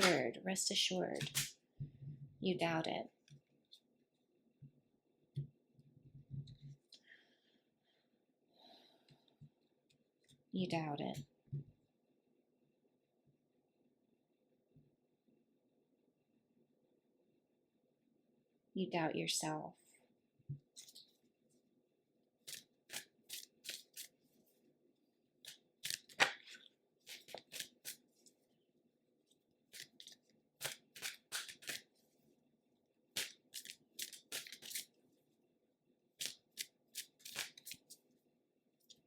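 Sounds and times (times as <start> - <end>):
cards being shuffled: 22.4 - 24.2, 25.4 - 28.2, 29.7 - 31.9, 33.1 - 35.0, 36.2 - 38.0.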